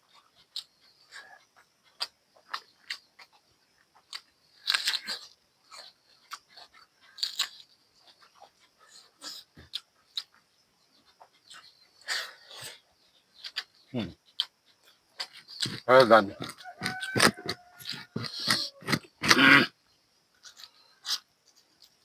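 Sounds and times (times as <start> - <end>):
close chewing and crunching: 0.0 - 22.0.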